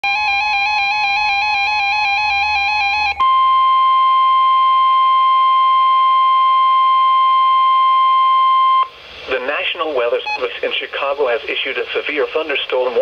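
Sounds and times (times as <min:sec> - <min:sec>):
steady loud alarm tone: 0:00.0 - 0:08.9
two-pitch warbling electronic alarm: 0:00.0 - 0:08.9.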